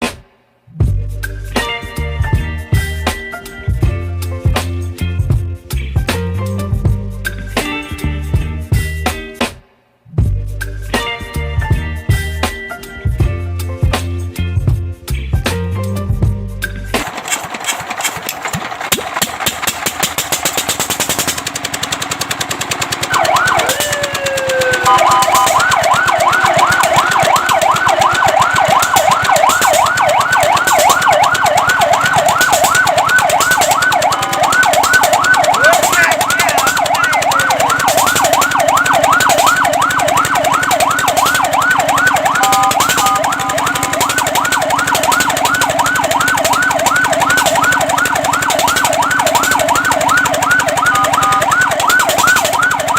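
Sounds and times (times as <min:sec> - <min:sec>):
engine chugging: 0:16.7 - 0:52.9
fire truck siren: 0:22.2 - 0:52.9.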